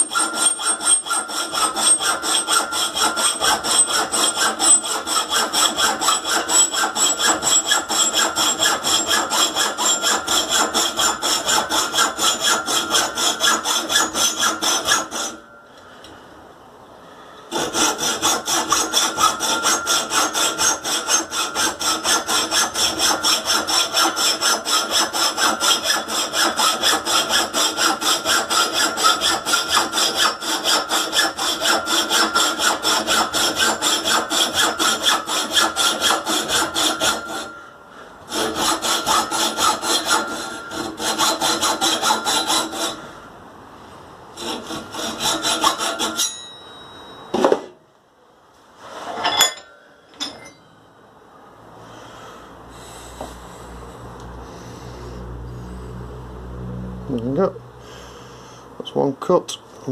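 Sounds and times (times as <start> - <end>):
hacksaw cutting pipe: 0.0 - 15.5, 17.5 - 37.6, 38.3 - 43.1, 44.4 - 46.4
high ringing tone from pipe: 12.3 - 16.4, 18.7 - 21.8, 36.9 - 38.2, 40.1 - 41.0, 45.9 - 47.9, 49.2 - 51.7.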